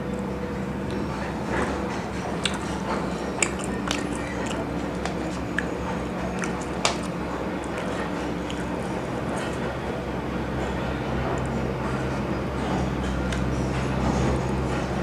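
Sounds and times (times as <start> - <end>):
wet chewing of fried food: 0.8 - 10.0
crunching of fried coating: 1.9 - 9.7.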